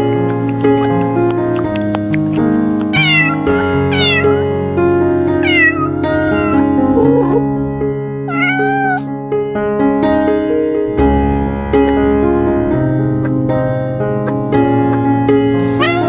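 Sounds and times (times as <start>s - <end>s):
piano music: 2.8s - 9.2s
cat meowing: 2.9s - 4.5s, 5.4s - 7.5s, 8.3s - 9.1s, 15.6s - 16.0s.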